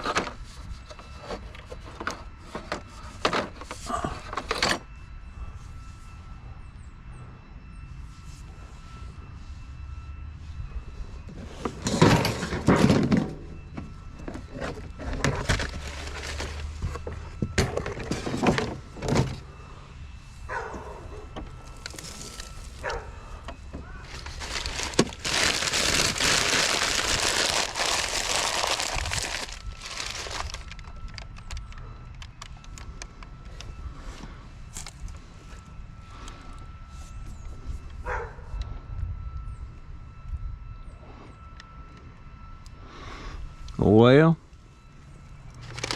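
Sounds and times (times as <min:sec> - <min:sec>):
scrap thunking and clattering: 0:11.7 - 0:19.4
loud even rustling: 0:24.0 - 0:30.8.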